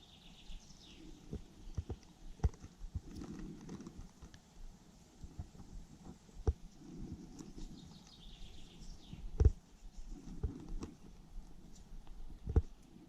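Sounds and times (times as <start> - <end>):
bird chirp: 0.0 - 2.4, 7.2 - 9.5.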